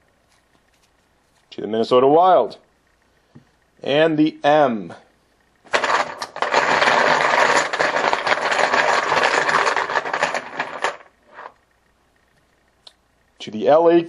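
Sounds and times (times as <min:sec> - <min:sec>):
dense rattling of small hard pieces: 0:05.7 - 0:11.5.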